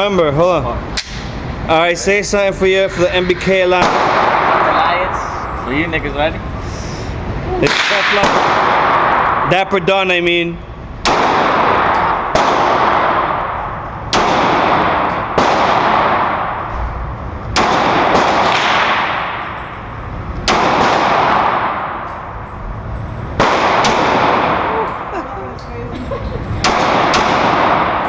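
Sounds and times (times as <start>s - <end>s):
pistol shots echoing: 3.0s - 5.6s, 7.6s - 9.5s, 11.0s - 16.8s, 17.4s - 22.4s, 23.3s - 25.1s, 26.6s - 28.0s.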